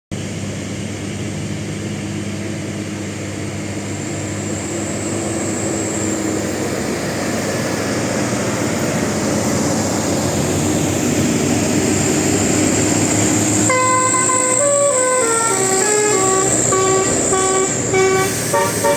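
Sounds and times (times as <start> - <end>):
bus engine and road noise: 0.1 - 18.9
musical bus horn melody: 13.5 - 18.9.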